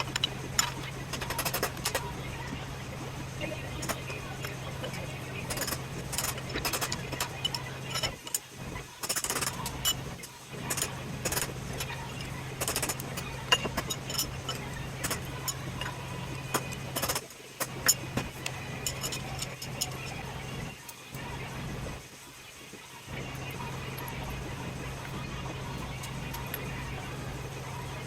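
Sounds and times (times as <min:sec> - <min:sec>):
metal parts clanking: 0:00.0 - 0:02.0, 0:04.8 - 0:18.2, 0:18.8 - 0:20.2
steady low hum: 0:00.0 - 0:28.0.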